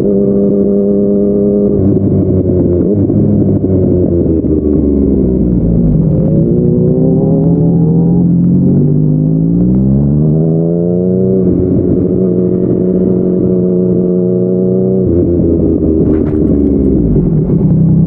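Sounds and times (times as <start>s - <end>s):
motorcycle engine revving: 0.0s - 18.0s.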